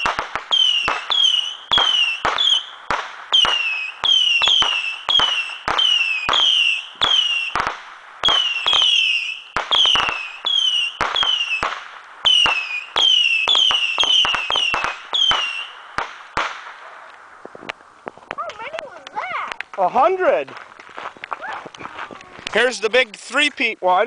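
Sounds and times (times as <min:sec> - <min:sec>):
whistling rockets launching: 0:00.0 - 0:16.8
sharp cracks and pops: 0:00.0 - 0:23.6.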